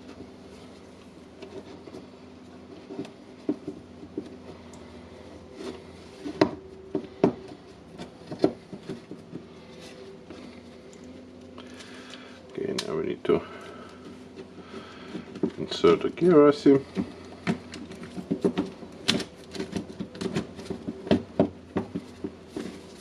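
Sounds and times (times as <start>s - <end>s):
clicks and knocks of plastic parts: 5.6s - 23.0s.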